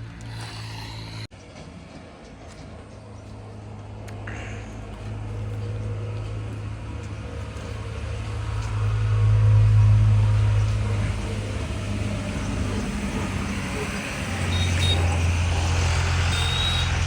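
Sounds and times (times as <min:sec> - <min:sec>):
motor running with low hum: 0:00.0 - 0:01.3, 0:04.9 - 0:17.0.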